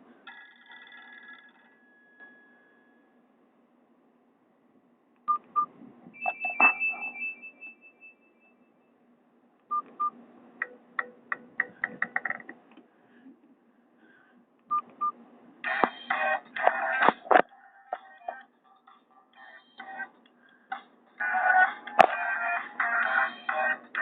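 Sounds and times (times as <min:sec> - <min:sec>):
short phone beeps: 0:05.3 - 0:08.9.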